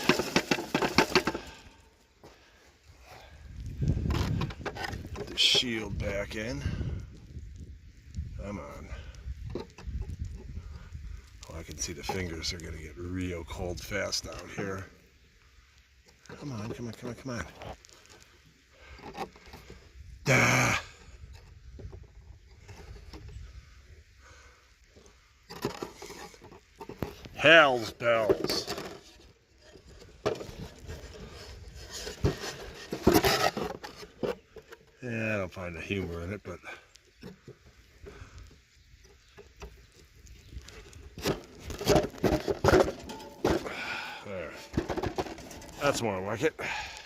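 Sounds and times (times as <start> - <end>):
scraping and knocking: 0.0 - 1.6, 3.8 - 6.4, 25.5 - 34.9, 40.6 - 46.1
faint clicks and rustling: 0.0 - 20.1, 20.9 - 43.8
wind rumble on microphone: 3.3 - 12.0.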